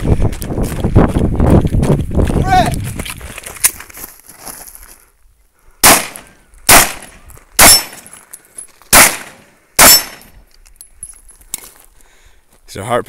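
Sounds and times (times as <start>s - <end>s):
pistol shots: 5.8s - 8.1s, 8.9s - 10.4s.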